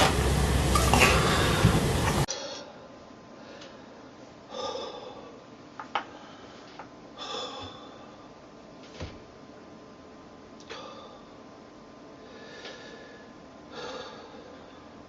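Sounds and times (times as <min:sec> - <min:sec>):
person breathing: 0:01.0 - 0:08.4, 0:10.6 - 0:11.4, 0:12.2 - 0:15.0.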